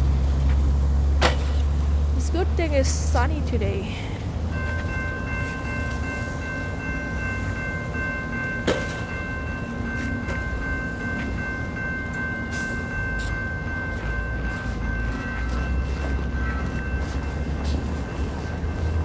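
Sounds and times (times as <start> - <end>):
light-rail train electrical whine: 0.0 - 19.0
train low rumble: 0.0 - 19.0.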